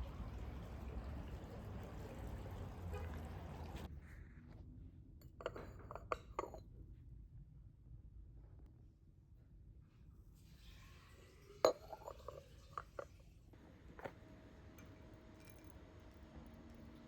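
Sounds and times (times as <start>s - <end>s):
glass clinking: 11.6s - 13.1s.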